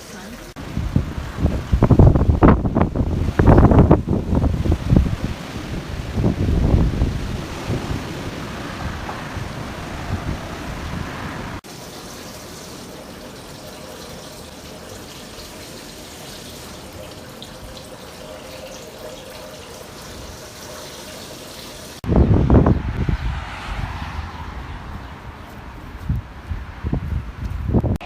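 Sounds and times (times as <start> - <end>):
wind buffeting microphone: 0.6 - 11.6, 22.0 - 28.0
wind rushing: 0.6 - 11.6, 22.0 - 28.0.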